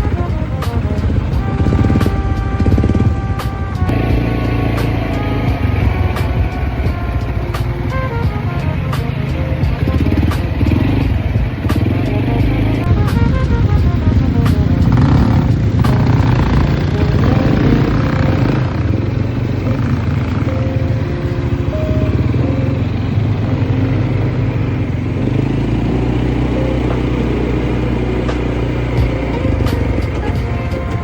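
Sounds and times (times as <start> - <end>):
background music: 0.0 - 31.0
vehicle engine running: 0.0 - 31.0.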